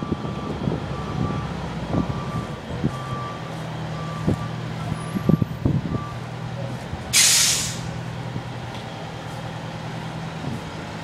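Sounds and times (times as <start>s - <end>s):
reversing alarm beeping: 0.0s - 6.2s.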